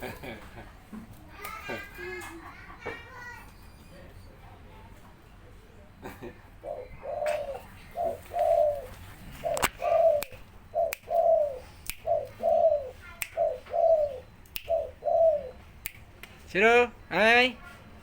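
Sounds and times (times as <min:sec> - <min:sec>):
dove cooing: 0:06.5 - 0:15.8
sharp clicks: 0:14.4 - 0:14.8, 0:15.8 - 0:16.4.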